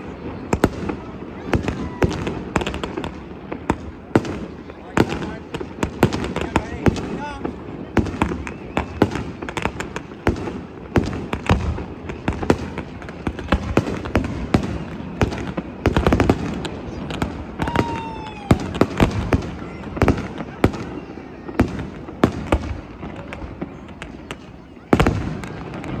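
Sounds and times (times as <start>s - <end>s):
fireworks bangs and crackling: 0.0s - 26.0s
falling firework whistle: 7.4s - 10.1s, 11.3s - 26.0s.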